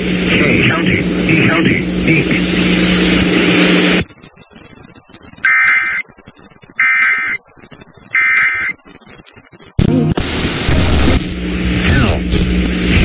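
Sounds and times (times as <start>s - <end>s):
faint radio hiss: 0.0s - 13.0s
warbling digital data tones: 4.1s - 9.8s.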